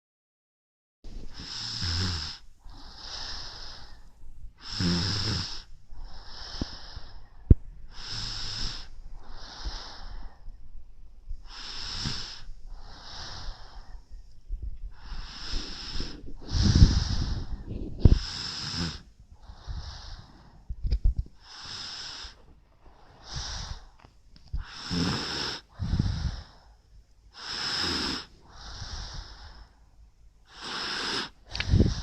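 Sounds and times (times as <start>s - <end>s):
snoring: 1.2s - 4.0s, 4.6s - 7.2s, 7.9s - 10.3s, 11.4s - 13.9s, 15.0s - 20.5s, 21.4s - 23.9s, 24.6s - 26.6s, 27.4s - 29.7s, 30.5s - 32.0s.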